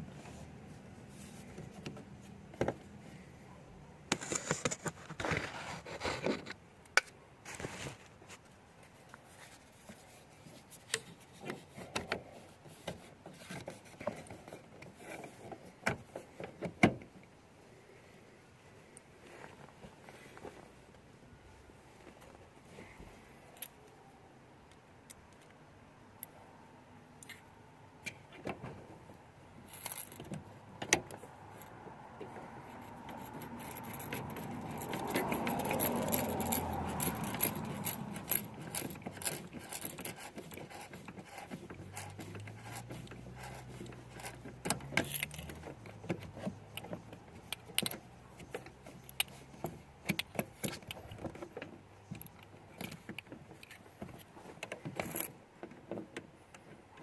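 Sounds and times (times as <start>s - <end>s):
metallic clicks of hand tools: 33.0s - 46.0s.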